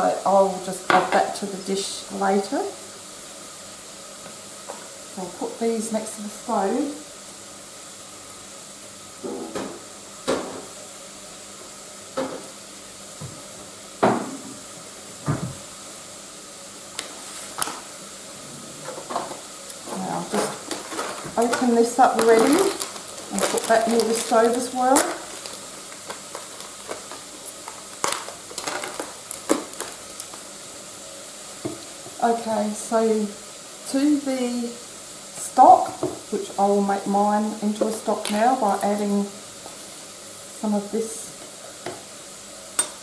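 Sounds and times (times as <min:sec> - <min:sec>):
food sizzling in a frying pan: 0:00.0 - 0:43.0
steady background hiss: 0:00.0 - 0:43.0
kitchen items clicking and knocking: 0:20.3 - 0:30.0.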